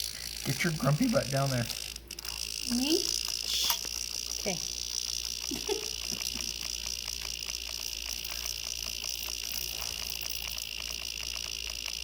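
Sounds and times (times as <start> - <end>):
cicada buzzing: 0.0 - 12.0.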